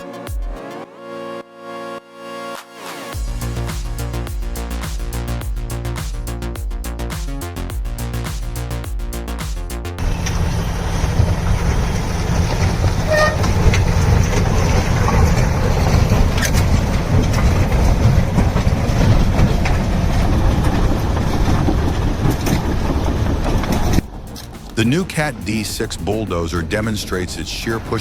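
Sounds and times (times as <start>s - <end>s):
heavy machinery rumbling: 3.2s - 28.0s
machinery clanks: 10.0s - 28.0s
short horn toot: 13.1s - 13.5s.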